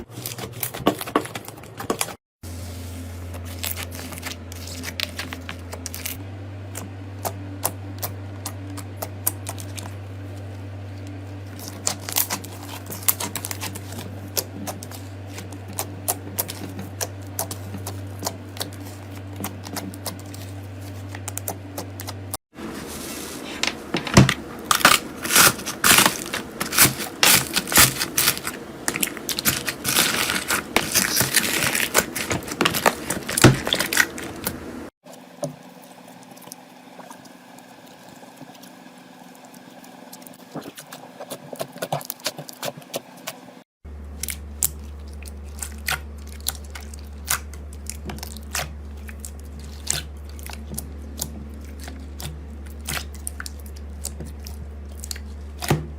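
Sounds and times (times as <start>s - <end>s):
slime crackling and popping: 11.6s - 20.4s, 24.7s - 34.5s.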